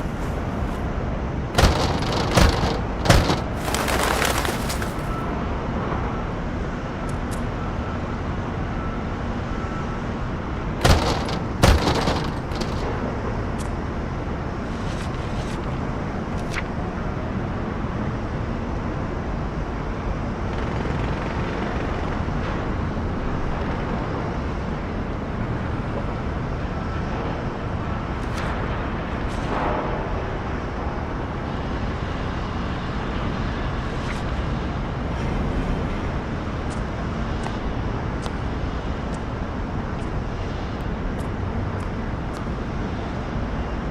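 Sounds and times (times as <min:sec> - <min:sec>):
noisy background rumble: 0:00.0 - 0:07.0, 0:10.0 - 0:43.9
loud bangs: 0:01.6 - 0:05.2, 0:10.8 - 0:12.8.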